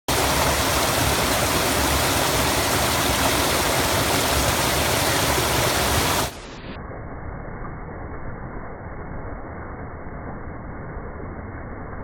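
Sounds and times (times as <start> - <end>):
creek water rushing and splashing: 0.1 - 6.6.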